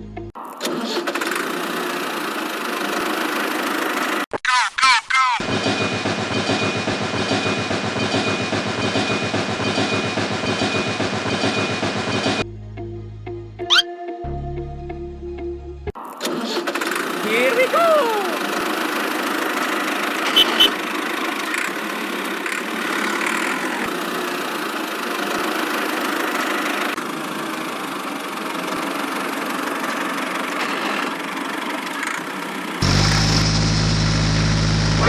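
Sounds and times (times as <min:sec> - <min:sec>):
small engine running: 0:00.7 - 0:04.2, 0:16.4 - 0:35.0.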